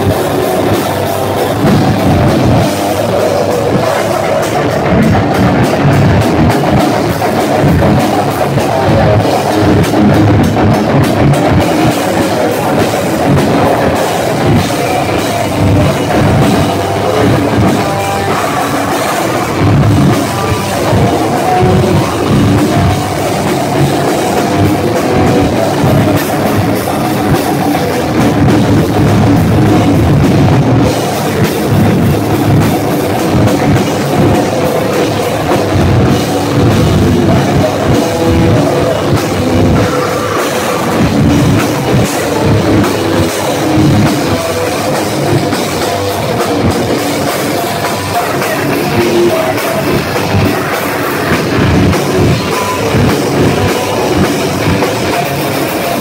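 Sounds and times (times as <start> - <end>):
heavy metal band playing: 0.0 - 56.0.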